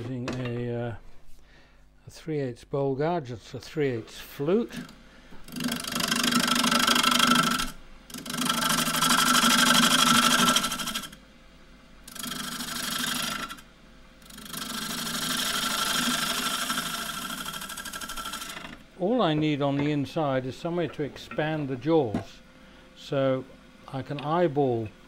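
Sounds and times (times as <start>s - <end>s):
gouge cutting wood on lathe: 5.5s - 11.2s, 12.1s - 13.6s, 14.2s - 18.8s.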